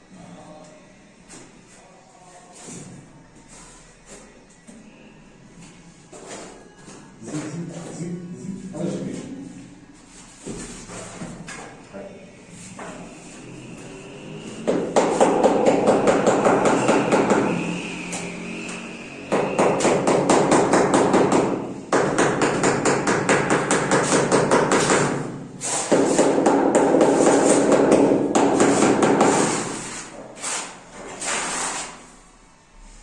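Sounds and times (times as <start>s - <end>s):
rapid hammering strikes: 14.7s - 17.6s, 19.3s - 25.3s, 25.9s - 29.6s.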